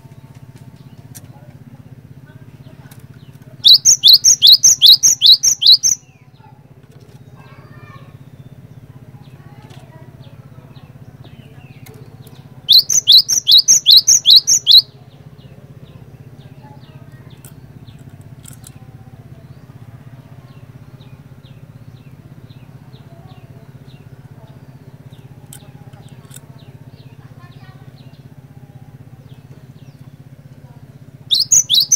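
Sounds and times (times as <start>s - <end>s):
faint bird chip notes: 2.9s - 6.0s, 11.3s - 19.4s, 31.3s - 31.9s
bird singing whistled notes: 3.6s - 6.2s, 11.3s - 15.5s, 31.2s - 31.9s.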